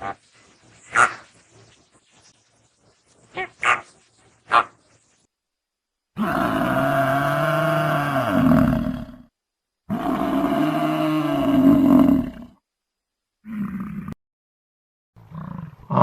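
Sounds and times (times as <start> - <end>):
large animal roaring: 6.2 - 9.3, 9.9 - 12.6.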